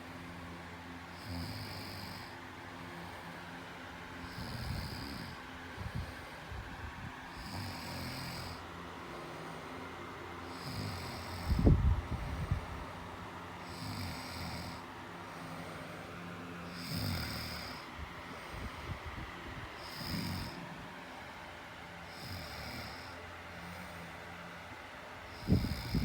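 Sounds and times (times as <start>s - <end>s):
whistling snoring: 19.8s - 20.6s, 25.4s - 26.0s.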